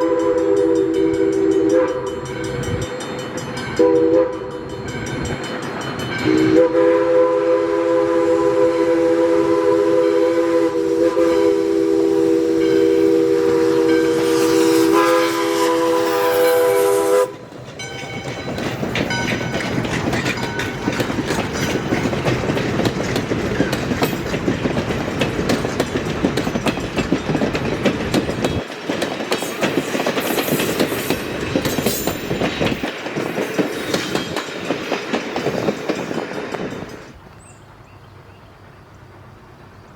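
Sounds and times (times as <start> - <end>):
train wheels rumbling and clicking: 0.0 - 6.8, 12.5 - 37.5
steam locomotive chime whistle: 0.0 - 19.7.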